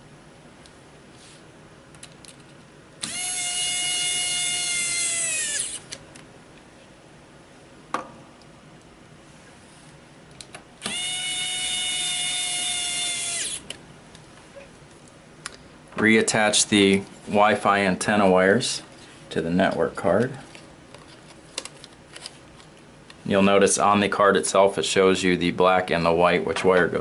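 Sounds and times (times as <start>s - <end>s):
electric screwdriver whine: 3.0s - 5.9s, 10.8s - 13.7s.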